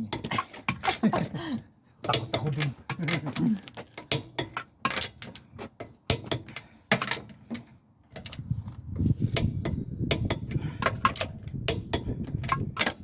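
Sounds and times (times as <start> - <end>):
metallic clicks of hand tools: 9.3 - 13.0.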